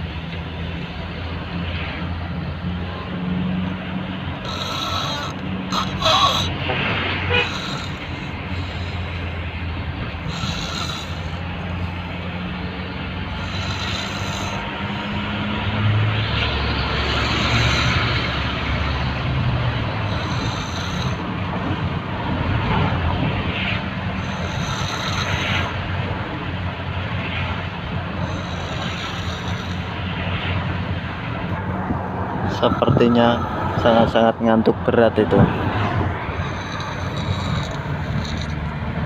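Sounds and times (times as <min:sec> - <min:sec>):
person snoring: 0:04.4 - 0:06.5, 0:07.4 - 0:09.4, 0:10.2 - 0:11.4, 0:13.3 - 0:15.2, 0:17.0 - 0:18.5, 0:20.0 - 0:21.2, 0:24.2 - 0:25.8, 0:28.2 - 0:29.9, 0:32.4 - 0:34.0, 0:36.3 - 0:38.6.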